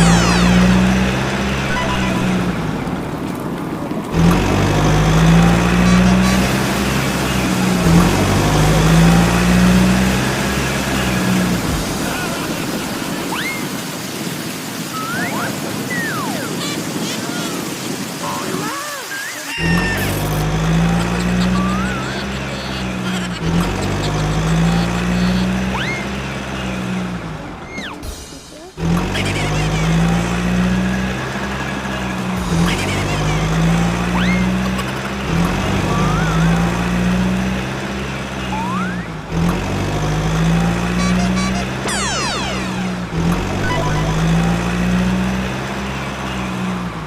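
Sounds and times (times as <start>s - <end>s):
motor drone: 0.0s - 3.2s
low vehicle engine drone: 0.0s - 13.4s, 19.6s - 47.0s
rising whistle-like glides: 41.8s - 44.6s.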